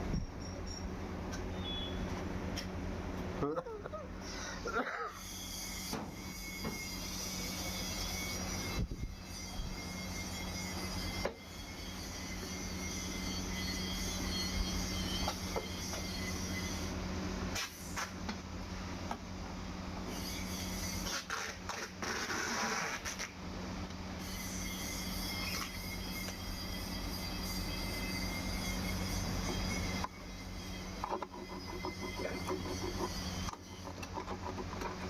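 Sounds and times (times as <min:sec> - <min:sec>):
short scraping noises: 0:20.1 - 0:23.4.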